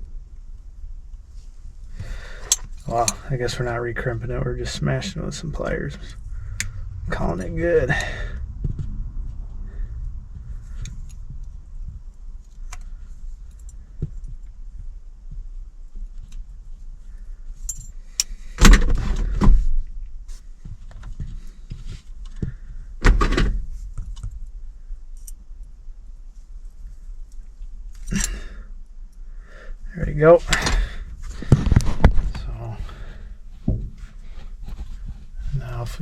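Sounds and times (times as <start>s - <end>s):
small metal parts clinking: 17.6s - 18.4s.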